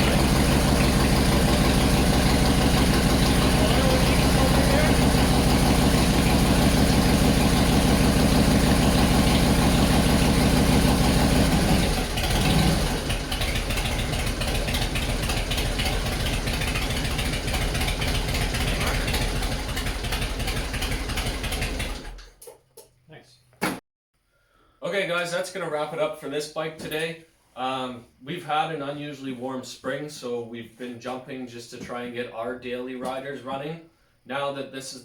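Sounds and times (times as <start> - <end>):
motorcycle engine running: 0.0 - 22.2.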